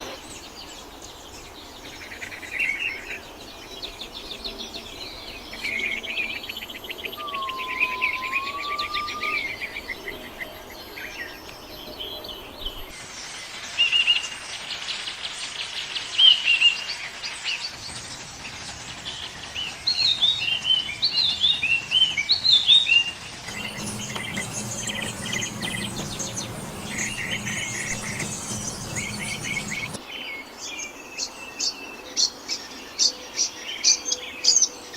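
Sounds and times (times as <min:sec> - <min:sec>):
wild birds singing and calling: 0:00.0 - 0:12.9, 0:23.5 - 0:30.0.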